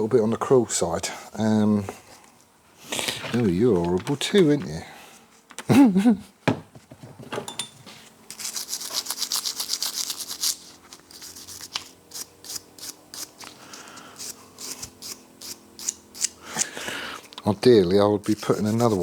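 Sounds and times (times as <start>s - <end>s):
brush scrubbing metal: 8.3s - 16.4s, 17.2s - 19.0s.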